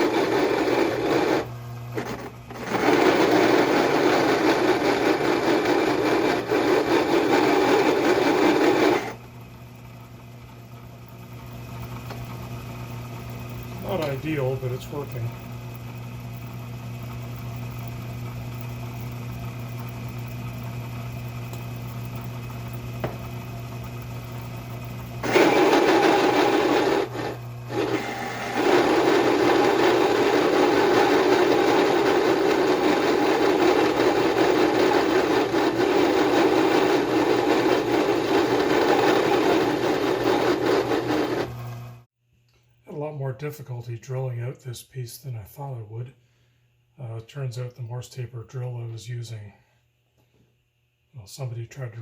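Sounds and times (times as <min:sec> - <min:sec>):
drill grinding into steel: 0:00.0 - 0:09.2, 0:25.2 - 0:41.7
lathe motor hum: 0:00.0 - 0:42.1.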